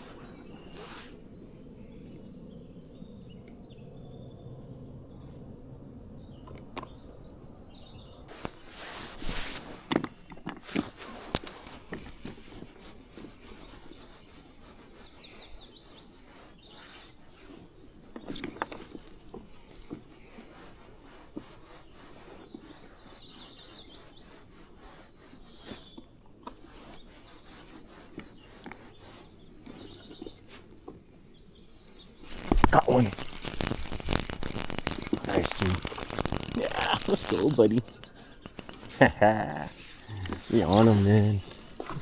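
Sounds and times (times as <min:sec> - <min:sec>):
steady outdoor hiss: 0:31.5 - 0:42.0
songbird trilling: 0:32.1 - 0:42.0
handling clicks and knocks: 0:32.3 - 0:42.0.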